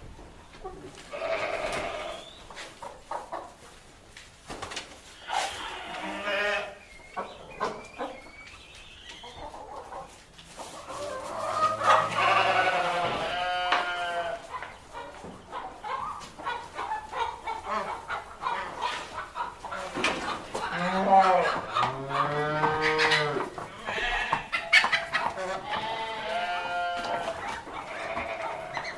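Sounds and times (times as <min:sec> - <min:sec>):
chickens clucking: 0:00.0 - 0:28.9
farm animal long call: 0:11.3 - 0:14.4, 0:20.7 - 0:24.6.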